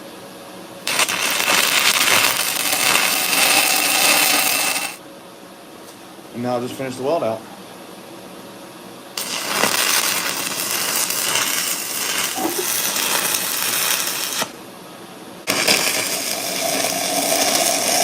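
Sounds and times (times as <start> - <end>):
welding arc crackling: 0.8 - 5.0, 9.2 - 14.6, 15.5 - 18.0.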